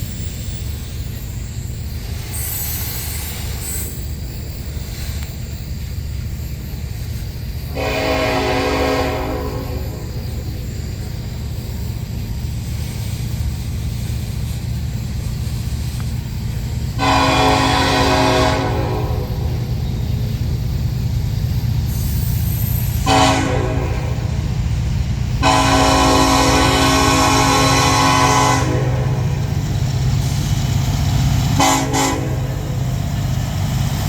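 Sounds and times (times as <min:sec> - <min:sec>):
passing train rumble: 0:00.0 - 0:34.0
diesel locomotive horn blasts: 0:07.7 - 0:10.5, 0:16.9 - 0:19.9, 0:23.0 - 0:24.6, 0:25.4 - 0:30.4, 0:31.5 - 0:33.2.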